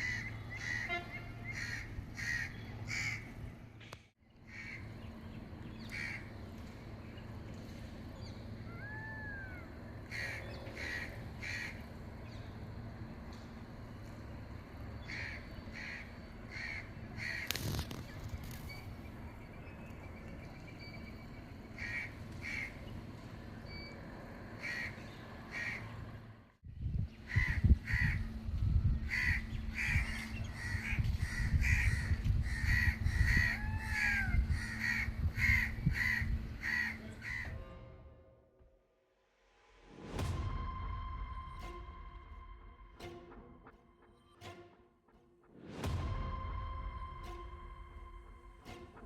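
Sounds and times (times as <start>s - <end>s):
birds calling: 0.0s - 3.6s, 4.2s - 26.2s, 27.0s - 37.6s
heavy low rumble: 26.0s - 38.2s, 39.6s - 44.0s, 45.6s - 49.0s.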